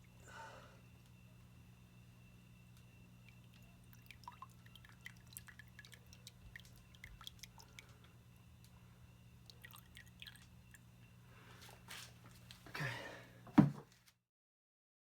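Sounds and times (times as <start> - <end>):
steady low hum: 0.0 - 13.6
engine oil dripping: 2.8 - 8.7, 9.4 - 11.0.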